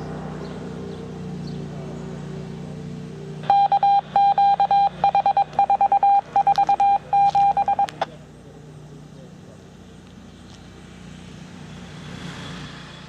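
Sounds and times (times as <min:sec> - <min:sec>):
pulsed beeps over radio: 0:03.4 - 0:08.1.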